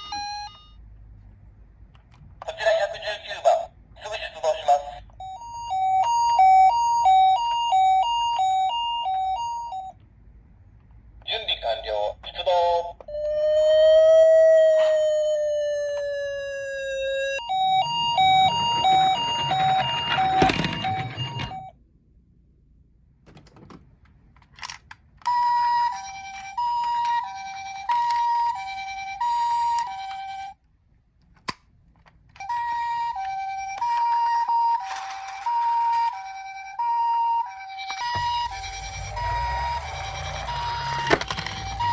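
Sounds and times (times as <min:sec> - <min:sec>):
toy electronic two-tone siren: 0:00.0 - 0:00.8, 0:05.1 - 0:10.0, 0:13.0 - 0:21.7, 0:25.2 - 0:30.6, 0:32.4 - 0:41.9.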